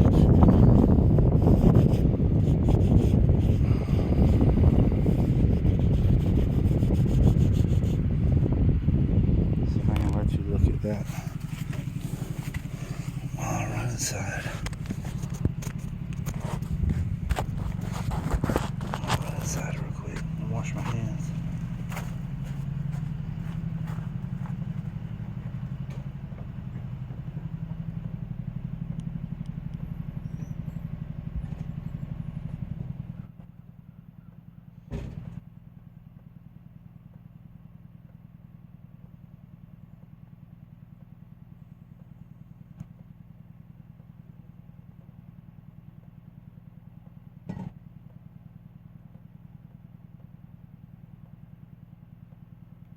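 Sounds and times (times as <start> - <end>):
engine running: 0.0 - 52.9.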